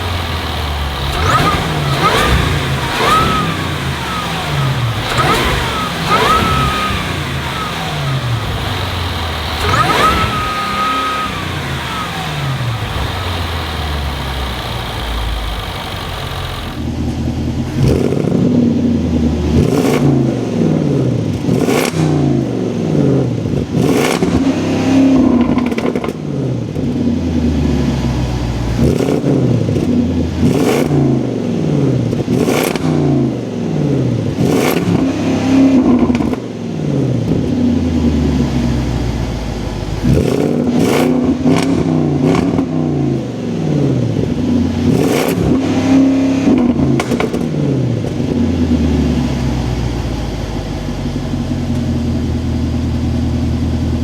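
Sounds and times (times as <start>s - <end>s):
car engine revving: 0.0s - 54.0s.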